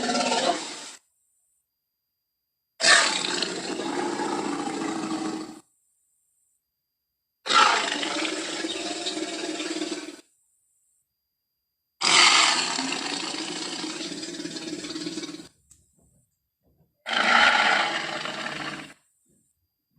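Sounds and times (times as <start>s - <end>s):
dinosaur roar: 0.0s - 1.0s, 2.8s - 5.6s, 7.5s - 10.2s, 12.0s - 15.6s, 17.0s - 19.0s.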